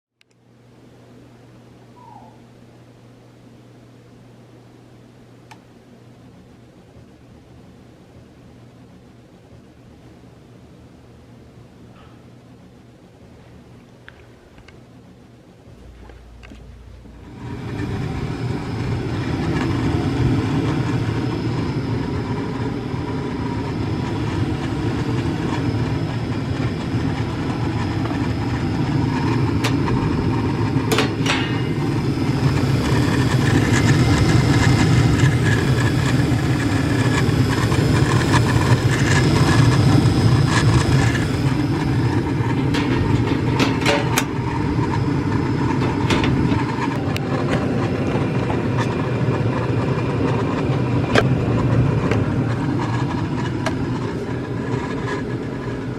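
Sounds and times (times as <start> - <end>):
gas furnace running: 0.2 - 55.9
sharp furnace clicks: 22.3 - 47.2.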